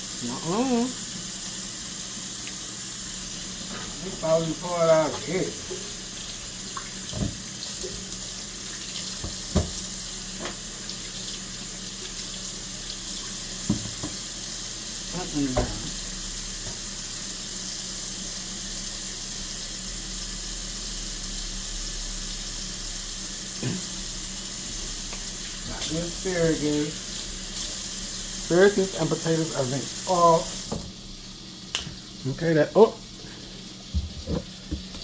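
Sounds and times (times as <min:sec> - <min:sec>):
tap running into sink: 0:05.0 - 0:08.2, 0:09.0 - 0:11.0, 0:13.6 - 0:14.3, 0:15.4 - 0:16.0, 0:30.5 - 0:31.0, 0:33.9 - 0:35.0
knocks against sink: 0:07.1 - 0:07.4, 0:09.2 - 0:09.8, 0:13.7 - 0:14.2, 0:15.5 - 0:15.9, 0:33.9 - 0:35.0.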